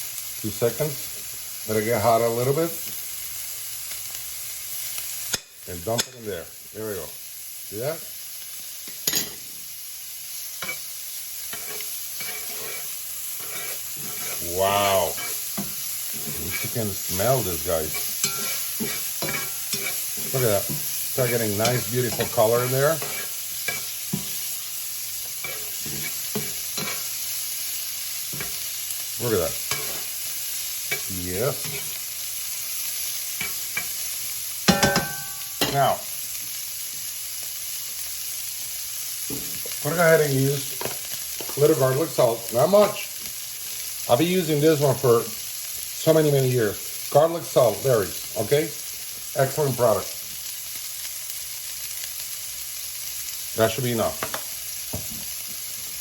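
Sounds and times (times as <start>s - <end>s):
steak sizzling in a pan: 0.0s - 56.0s
utensil clattering against pan: 34.7s - 35.8s.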